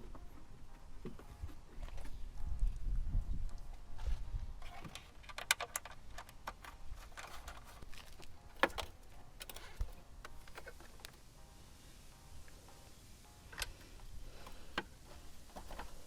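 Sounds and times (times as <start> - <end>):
small metal parts clicking: 4.6 - 11.2.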